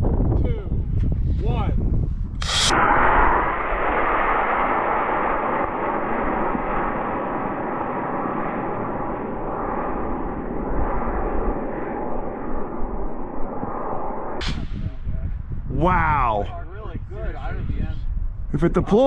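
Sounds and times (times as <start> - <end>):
model rocket roaring: 2.4 - 14.4.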